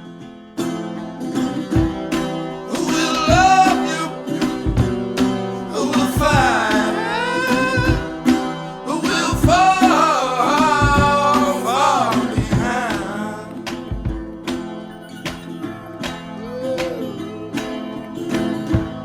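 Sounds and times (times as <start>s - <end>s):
guitar accompaniment: 0.0s - 19.0s
person singing: 2.7s - 4.9s, 5.7s - 13.7s.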